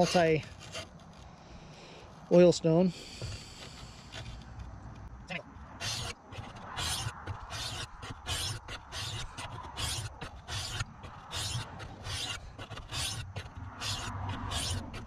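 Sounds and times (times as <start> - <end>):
knife scraping on sharpening stone: 6.8 - 15.0.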